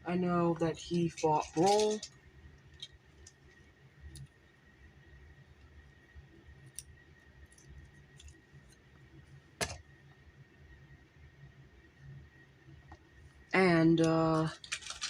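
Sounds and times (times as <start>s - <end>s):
plastic figures clicking: 1.0s - 2.2s, 14.4s - 15.0s.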